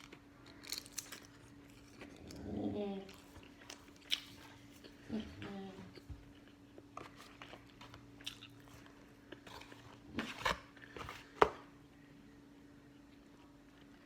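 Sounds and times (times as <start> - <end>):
person chewing crunchy food: 0.0 - 2.5, 3.1 - 5.1, 5.9 - 11.4.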